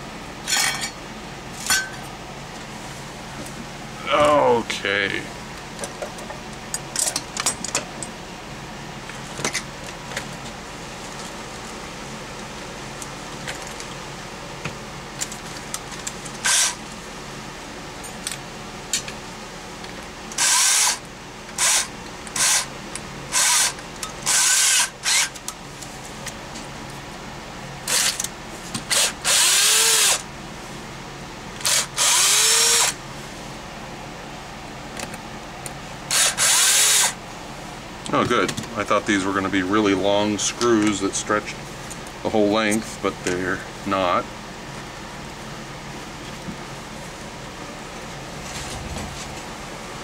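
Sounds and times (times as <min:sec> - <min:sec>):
cordless drill whirring: 0:16.4 - 0:16.8, 0:20.4 - 0:21.0, 0:21.6 - 0:22.7, 0:23.3 - 0:25.3, 0:28.9 - 0:30.2, 0:31.6 - 0:33.0, 0:36.1 - 0:37.2.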